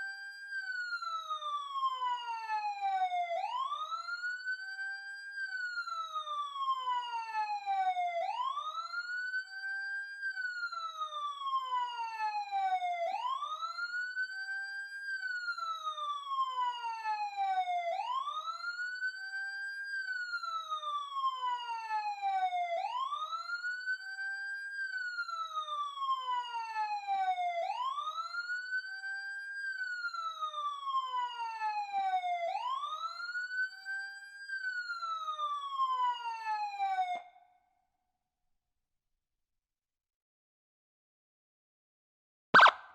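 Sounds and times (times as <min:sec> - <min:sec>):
electronic siren wailing: 0:42.6 - 0:42.9.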